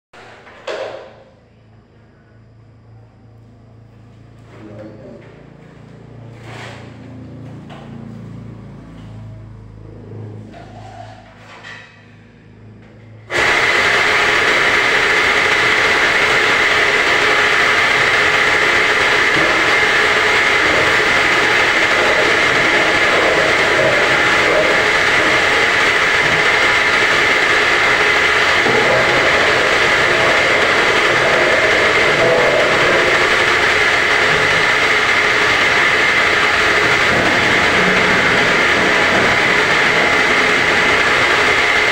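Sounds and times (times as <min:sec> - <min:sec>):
machine motor running: 0:12.7 - 0:41.9.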